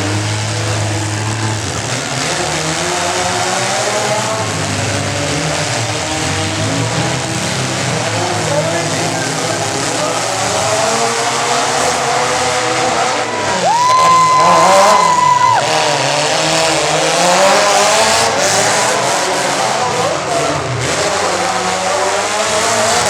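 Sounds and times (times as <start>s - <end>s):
truck engines revving: 0.0s - 23.0s.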